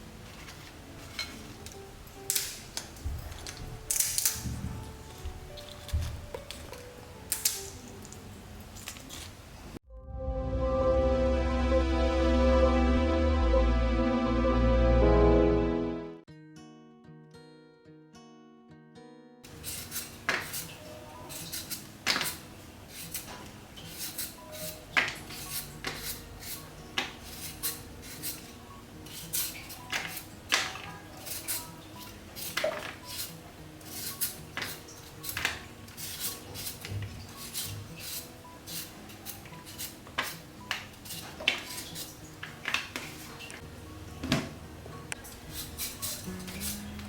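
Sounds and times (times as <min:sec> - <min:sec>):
kitchen utensils and dishes clinking: 0:00.0 - 0:09.4, 0:19.5 - 0:47.0.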